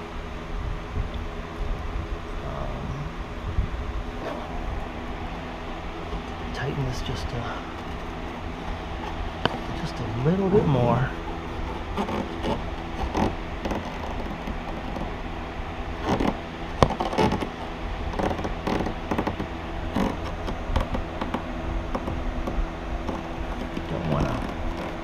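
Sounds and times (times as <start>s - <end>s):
steady background hum: 0.0s - 25.0s
creaks scrapes and clicks: 5.2s - 15.2s, 15.9s - 25.0s.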